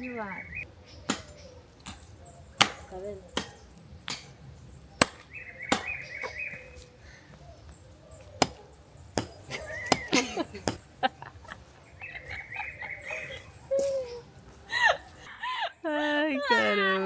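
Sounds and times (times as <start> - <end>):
blade chopping dry branch: 1.1 - 4.4, 5.0 - 6.7, 8.3 - 8.6, 9.2 - 10.9.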